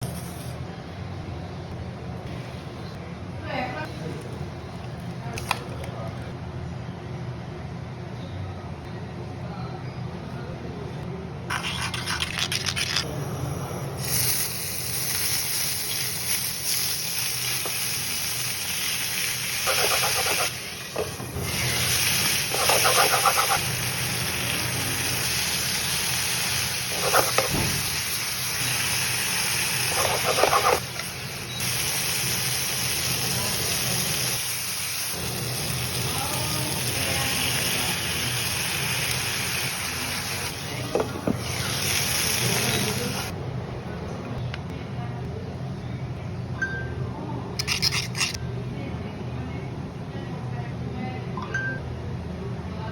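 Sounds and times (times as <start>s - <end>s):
chicken sizzling in a frying pan: 14.0s - 20.8s, 21.4s - 40.6s
utensil scraping a pan: 47.6s - 48.4s.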